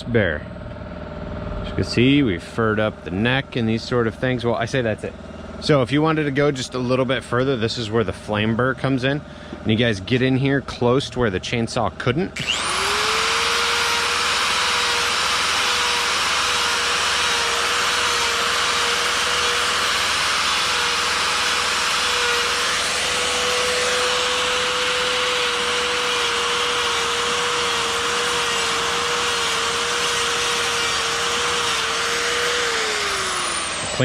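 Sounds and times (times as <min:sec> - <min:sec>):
die grinder whining: 0:12.2 - 0:34.0
burr grinding wood: 0:12.4 - 0:34.0.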